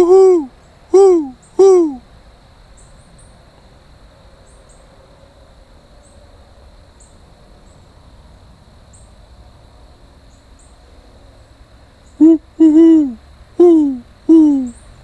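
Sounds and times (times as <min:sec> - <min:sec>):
high insect drone: 0:05.9 - 0:15.0.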